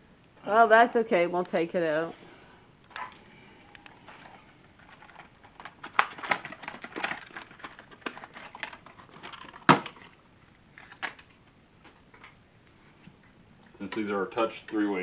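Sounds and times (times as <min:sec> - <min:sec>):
objects being handled: 0:02.8 - 0:14.0.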